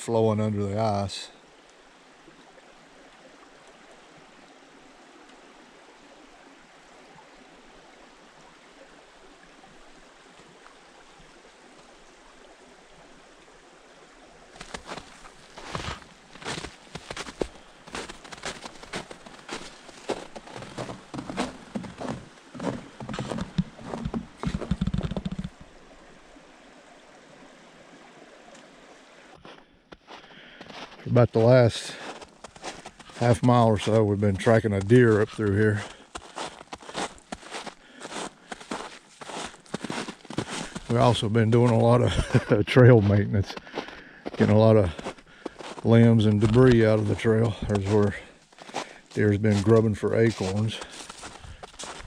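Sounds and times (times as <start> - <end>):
water flowing under ice: 0.0 - 52.0
footsteps crunching in snow: 14.6 - 25.6, 29.4 - 52.0.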